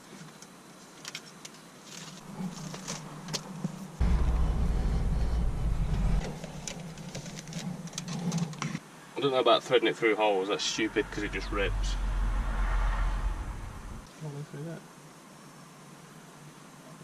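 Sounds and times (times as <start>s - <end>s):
low rumble: 2.2s - 8.2s, 10.5s - 14.1s.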